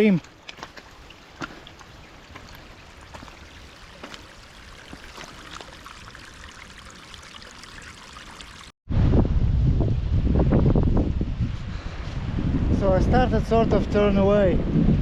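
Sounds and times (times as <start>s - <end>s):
stream water trickling: 0.0s - 8.8s
small splashes: 0.2s - 8.8s.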